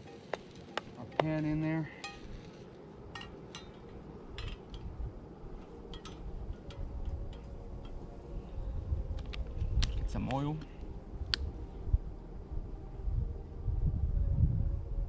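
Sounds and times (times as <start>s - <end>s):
light metal clicks and clinks: 0.0s - 2.4s, 3.1s - 4.9s, 5.8s - 8.1s.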